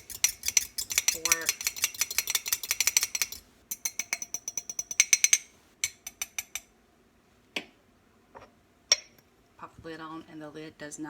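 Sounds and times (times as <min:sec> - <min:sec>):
whisk clinking against ceramic: 0:00.0 - 0:06.7.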